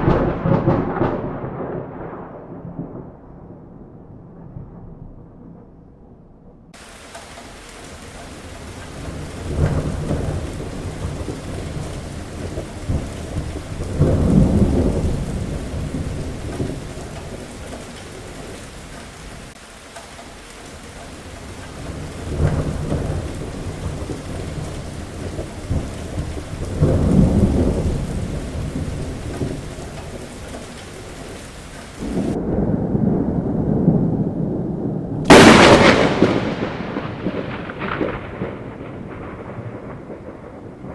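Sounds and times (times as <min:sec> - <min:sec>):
sharp thunderclap: 0:00.0 - 0:05.9, 0:06.8 - 0:19.6, 0:20.8 - 0:40.9
thunder rumbling: 0:00.0 - 0:40.9
heavy rain hissing: 0:06.8 - 0:32.4.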